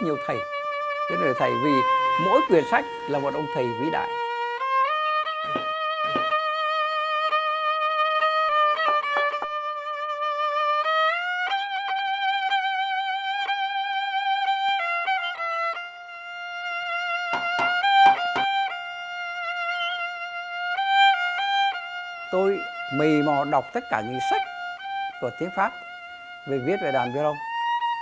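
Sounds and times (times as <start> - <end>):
solo violin melody: 0.0 - 28.0.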